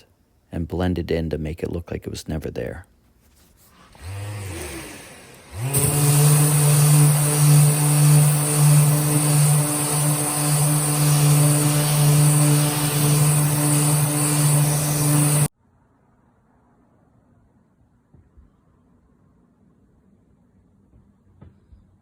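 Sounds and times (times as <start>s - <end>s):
electric sander on wood: 3.8s - 15.5s.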